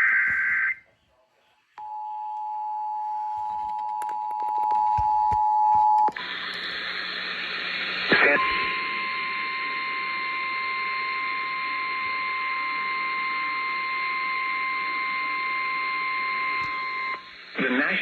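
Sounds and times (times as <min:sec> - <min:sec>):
radio hiss: 0:06.1 - 0:14.2, 0:15.0 - 0:18.0.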